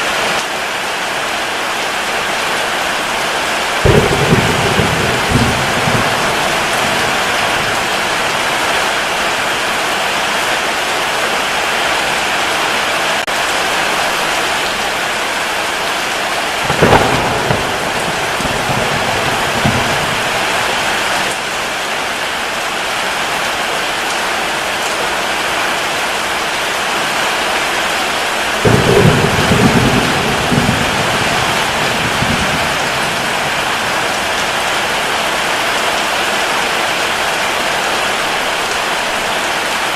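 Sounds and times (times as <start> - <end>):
heavy rain hissing: 0.0 - 39.9
thunder rumbling: 3.8 - 9.6, 16.5 - 21.6, 28.0 - 36.0.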